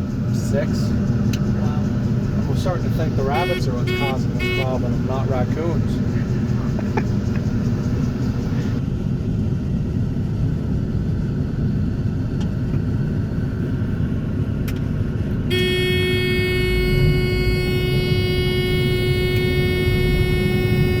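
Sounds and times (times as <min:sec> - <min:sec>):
farm machinery engine rumbling: 0:00.0 - 0:08.9, 0:12.5 - 0:21.0
steady horn-like tone: 0:03.2 - 0:05.4, 0:15.5 - 0:21.0.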